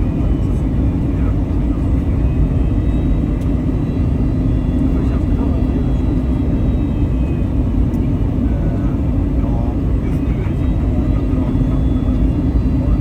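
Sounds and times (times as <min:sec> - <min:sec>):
airliner engines droning: 0:00.0 - 0:13.0
faint voices: 0:04.8 - 0:06.6.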